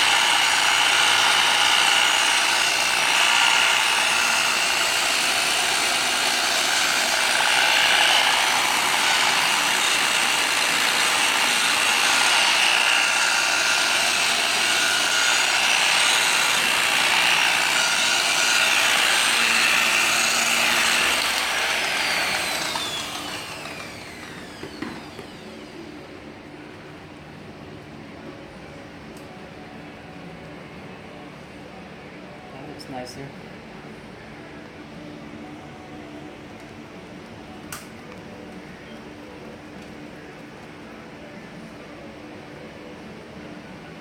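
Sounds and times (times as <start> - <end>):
electric buffer polishing: 0.0 - 25.6.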